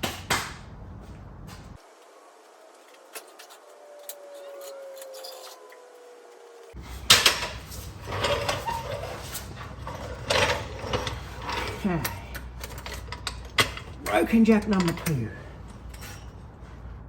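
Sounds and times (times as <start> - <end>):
metal clanking and scraping: 6.8 - 17.0.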